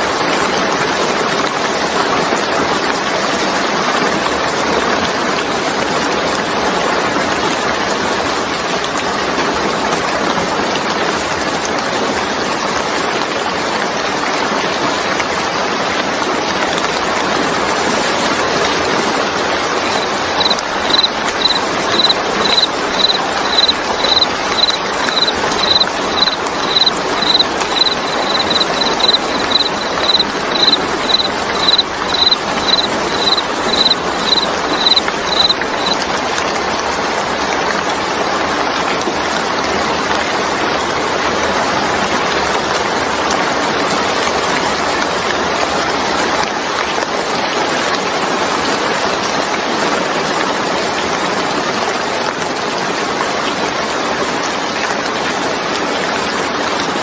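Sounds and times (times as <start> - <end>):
steady rain: 0.0 - 57.0
cricket chirping: 19.8 - 36.0.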